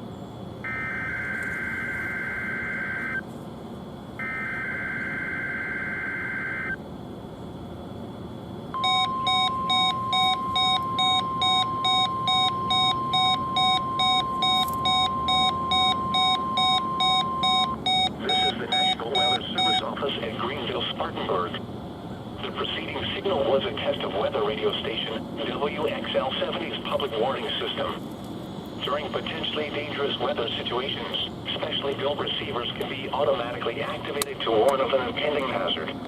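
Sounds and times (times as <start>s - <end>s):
steady warning alarm tone: 0.5s - 6.9s, 7.7s - 36.0s
rapid alarm beeps: 0.6s - 3.2s, 4.2s - 6.8s, 8.8s - 21.1s.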